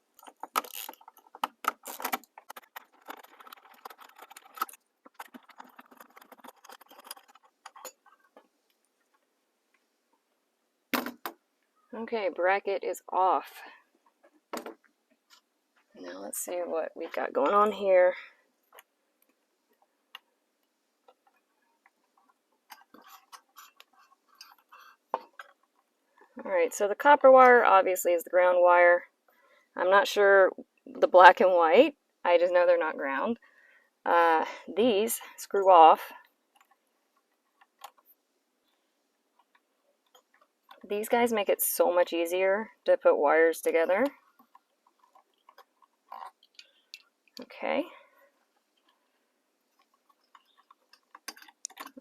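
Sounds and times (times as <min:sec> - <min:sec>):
metal clicking rattling and scraping: 0:00.1 - 0:08.5, 0:21.0 - 0:26.4, 0:44.0 - 0:47.5, 0:49.7 - 0:52.0.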